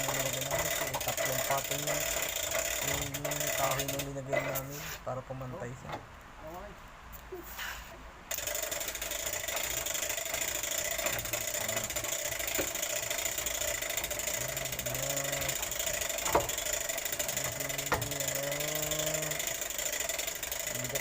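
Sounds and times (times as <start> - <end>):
machinery hum: 8.3 - 21.0.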